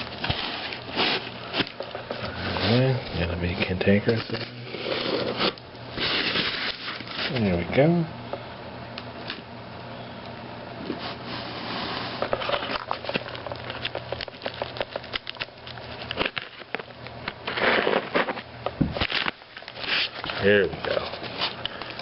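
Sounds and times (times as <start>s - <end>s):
packaging rustling and crackling: 0.0s - 7.5s, 11.0s - 18.4s.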